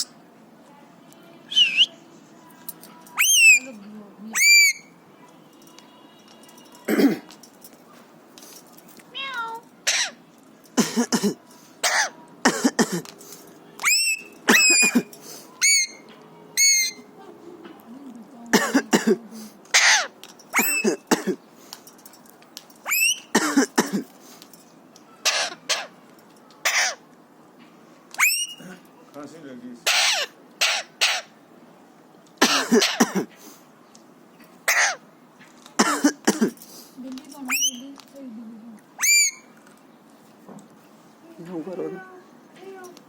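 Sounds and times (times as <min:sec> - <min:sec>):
parakeet shrill calls: 0:03.2 - 0:03.7, 0:04.3 - 0:04.9, 0:09.8 - 0:10.2, 0:13.8 - 0:14.9, 0:15.6 - 0:16.0, 0:16.6 - 0:17.1, 0:19.8 - 0:20.8, 0:22.9 - 0:23.3, 0:25.2 - 0:26.0, 0:28.2 - 0:28.6, 0:29.8 - 0:31.4, 0:37.5 - 0:37.8, 0:39.0 - 0:39.5
parakeet imitating a cough: 0:10.8 - 0:13.1, 0:14.5 - 0:15.1, 0:26.7 - 0:27.0, 0:32.4 - 0:33.3, 0:34.7 - 0:35.0.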